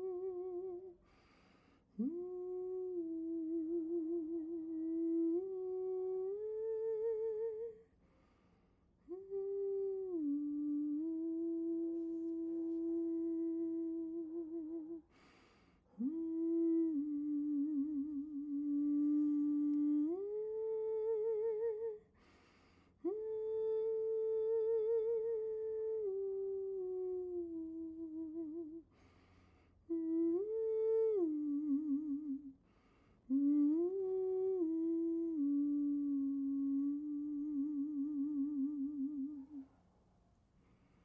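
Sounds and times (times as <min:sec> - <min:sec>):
woman humming a melody: 0:00.0 - 0:01.1, 0:02.0 - 0:07.9, 0:09.0 - 0:22.3, 0:23.0 - 0:29.0, 0:29.8 - 0:32.6, 0:33.3 - 0:39.7
breaths: 0:01.0 - 0:02.0, 0:07.9 - 0:09.0, 0:15.0 - 0:16.0, 0:22.0 - 0:23.1, 0:28.9 - 0:29.9, 0:32.6 - 0:33.3, 0:40.5 - 0:41.0.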